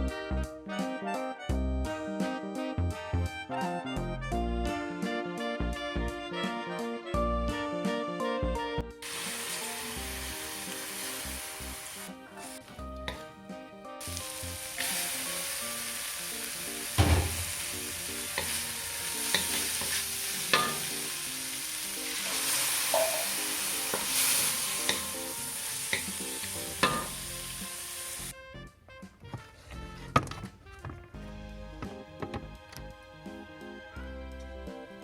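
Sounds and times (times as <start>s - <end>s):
light background music: 0.0s - 35.0s
food sizzling in a pan: 9.0s - 13.3s, 14.0s - 28.4s
spatula scraping a pan: 16.9s - 21.2s, 22.0s - 27.3s.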